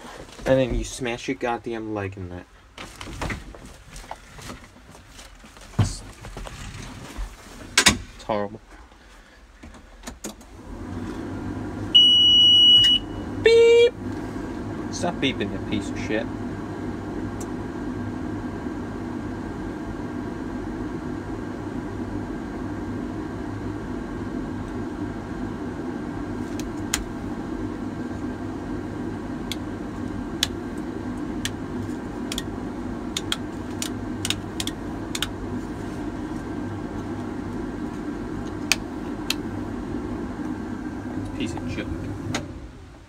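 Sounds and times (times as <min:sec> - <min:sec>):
sharp irregular clicks: 0:33.2 - 0:35.3.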